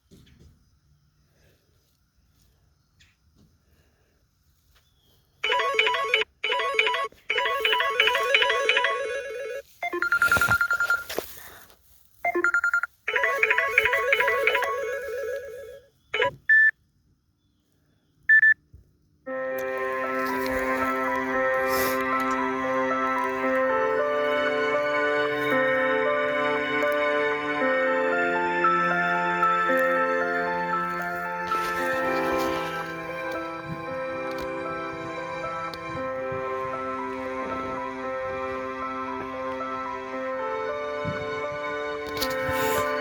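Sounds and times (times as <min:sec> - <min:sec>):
phone ringtone melodies: 0:05.4 - 0:11.2, 0:12.2 - 0:16.7, 0:19.3 - 0:43.0.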